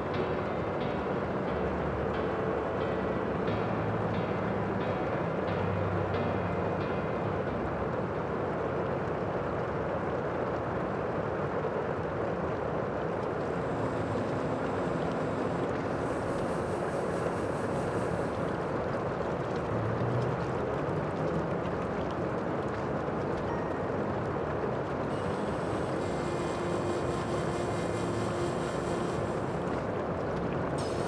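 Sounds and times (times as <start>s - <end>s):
faint low humming tones: 0.0s - 31.0s
steady rushing noise: 13.0s - 23.4s, 24.3s - 31.0s.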